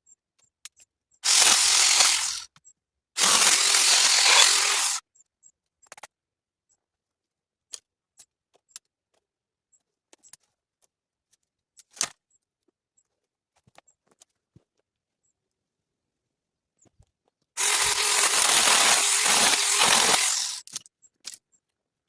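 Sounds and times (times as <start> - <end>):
hedge trimmer blades chattering: 1.2 - 2.4, 3.2 - 5.0, 17.6 - 20.8.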